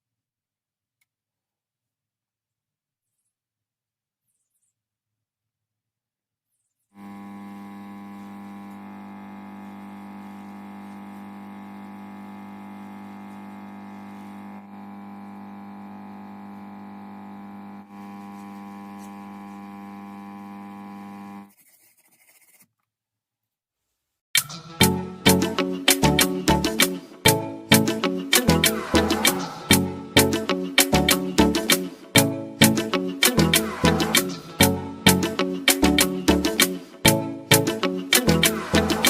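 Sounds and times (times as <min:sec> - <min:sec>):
buzzy electrical hum: 0:07.0 - 0:21.5.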